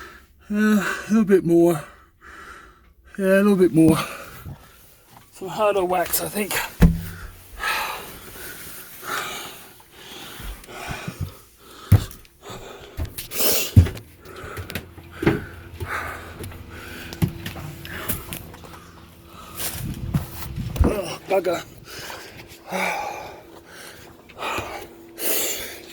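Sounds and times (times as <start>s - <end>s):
mallet knocking wooden plug: 6.8s - 7.2s.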